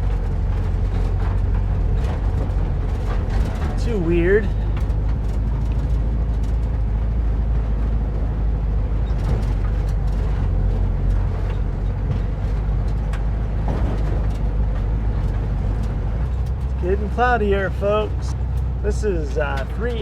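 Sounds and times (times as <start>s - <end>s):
bus engine running: 0.0s - 20.0s
knocks and rattles over bumps: 0.0s - 20.0s.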